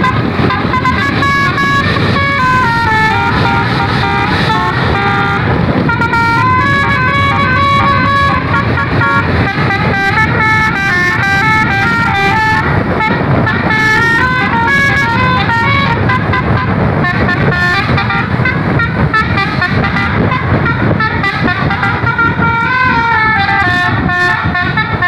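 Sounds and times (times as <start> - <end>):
bus musical horn tune: 0.0 - 25.0
engine and road rumble: 0.0 - 25.0.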